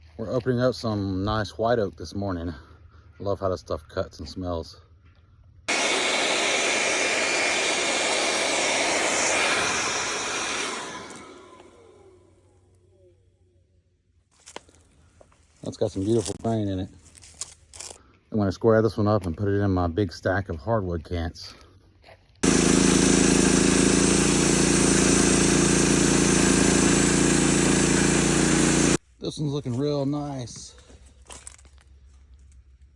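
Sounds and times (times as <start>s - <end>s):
bandsaw mill sawing wood: 5.7s - 12.1s, 22.4s - 29.0s
sawmill engine drone: 5.7s - 12.2s, 22.4s - 29.0s.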